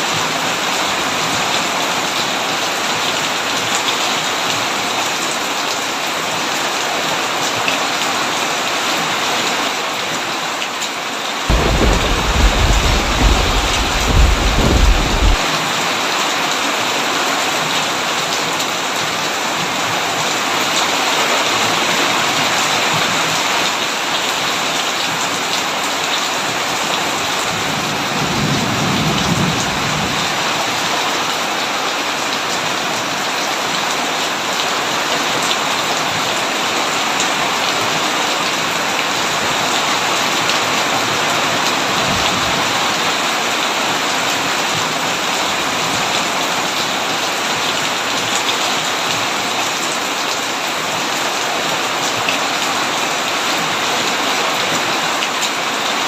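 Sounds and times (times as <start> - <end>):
heavy rain on a tin roof: 0.0 - 56.0
low rumble of thunder: 11.5 - 15.4.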